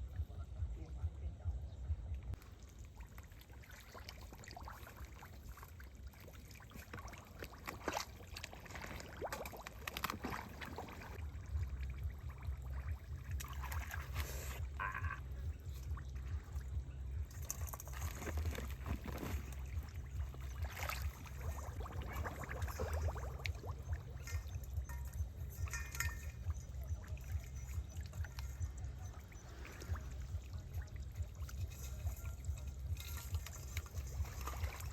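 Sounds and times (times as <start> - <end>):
steady low rumble: 0.0 - 3.0, 11.0 - 34.9
water splashing and trickling: 2.1 - 34.9.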